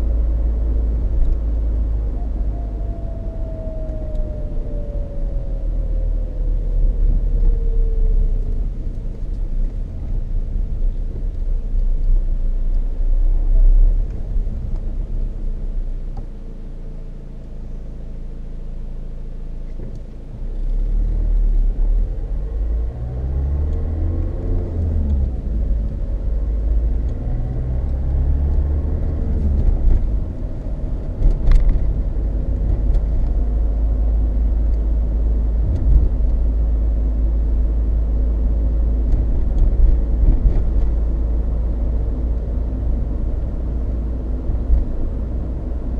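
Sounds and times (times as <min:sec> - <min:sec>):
diesel engine: 0:00.0 - 0:45.9
low tyre road rumble: 0:00.0 - 0:45.9.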